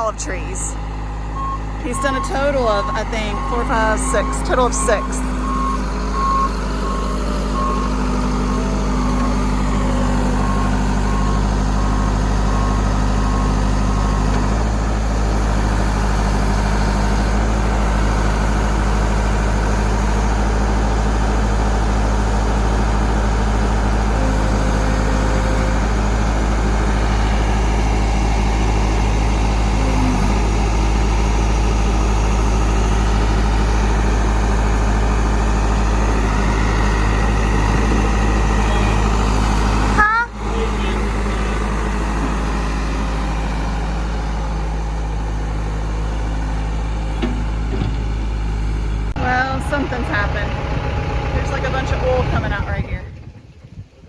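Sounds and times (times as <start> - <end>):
reversing alarm beeping: 0.0 - 14.6, 23.8 - 30.9
backhoe engine running: 0.0 - 54.0.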